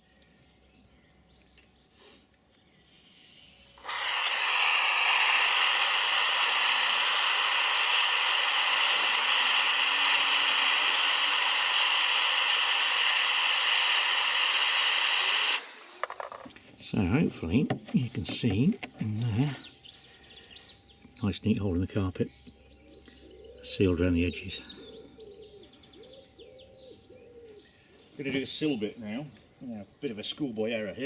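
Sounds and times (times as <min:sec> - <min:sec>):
blowtorch flame hissing: 0:02.8 - 0:16.4.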